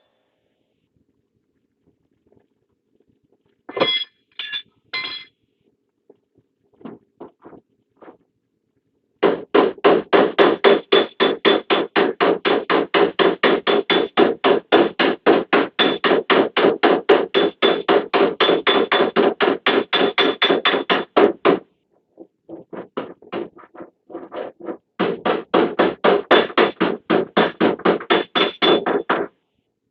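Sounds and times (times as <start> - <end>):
hammer tapping on sheet steel: 9.2 - 21.7, 22.8 - 29.3.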